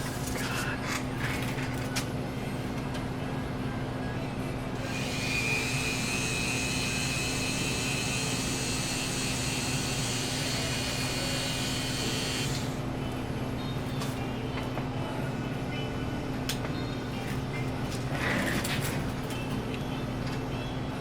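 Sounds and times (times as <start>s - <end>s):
high-pitched small motor whirring: 4.8s - 12.8s.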